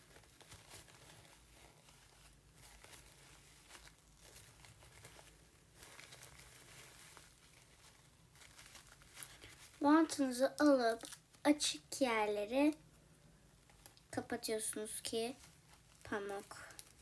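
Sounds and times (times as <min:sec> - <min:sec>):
tape and paper crinkling: 0:00.0 - 0:12.9, 0:13.6 - 0:17.0.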